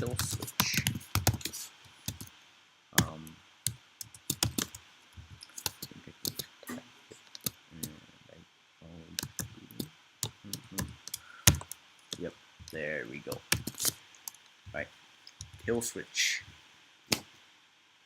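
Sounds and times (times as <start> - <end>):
keyboard typing clicks: 4.1 - 4.8, 10.2 - 11.8.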